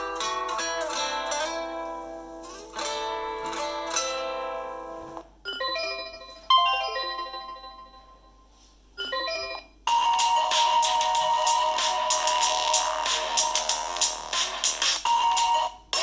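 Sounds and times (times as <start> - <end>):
phone chiming ringtones: 5.5 - 14.0, 15.1 - 16.0.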